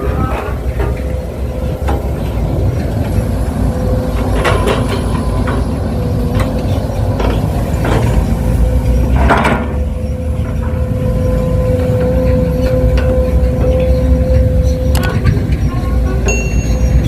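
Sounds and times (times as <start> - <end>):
excavator engine whine: 0.0 - 17.0.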